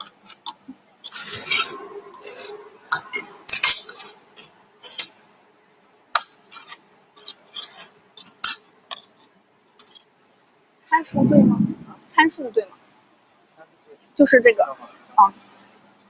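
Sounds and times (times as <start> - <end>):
metal parts clinking: 1.1 - 5.1, 6.5 - 9.0.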